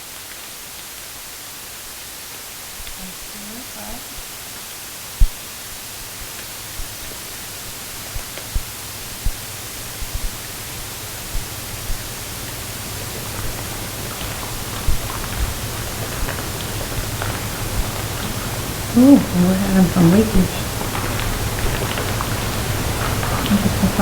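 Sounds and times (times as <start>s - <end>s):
background hiss: 0.0s - 24.0s
faint low hum: 8.0s - 24.0s.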